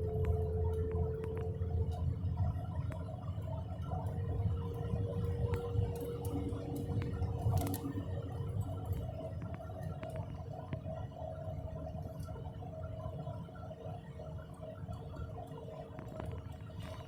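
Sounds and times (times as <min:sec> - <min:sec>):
low road rumble: 0:00.0 - 0:10.4.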